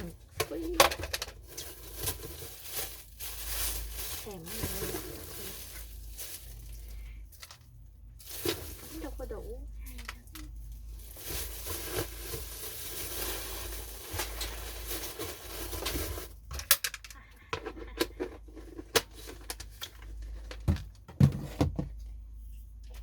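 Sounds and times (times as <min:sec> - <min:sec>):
plastic packaging crinkling: 0:00.0 - 0:17.0.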